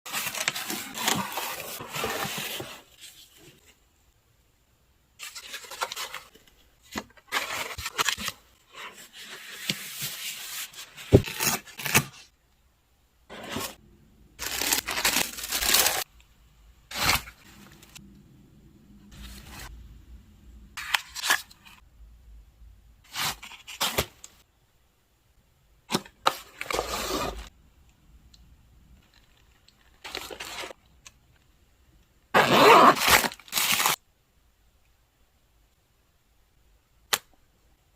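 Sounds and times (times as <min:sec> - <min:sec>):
paper rustling and tearing: 0:07.3 - 0:12.3, 0:14.4 - 0:16.1, 0:32.9 - 0:34.0.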